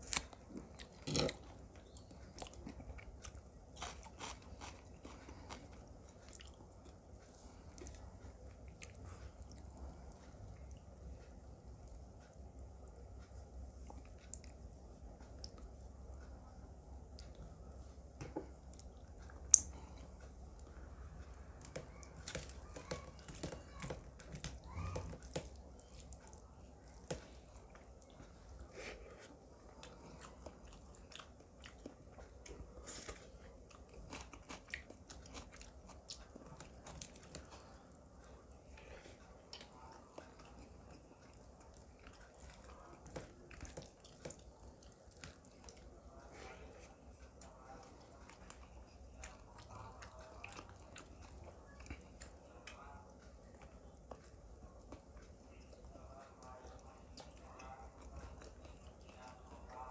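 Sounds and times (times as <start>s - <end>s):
crunching raw vegetables: 0.0s - 6.6s
chewing and smacking: 0.0s - 59.9s
wet mouth clicks: 19.4s - 19.8s.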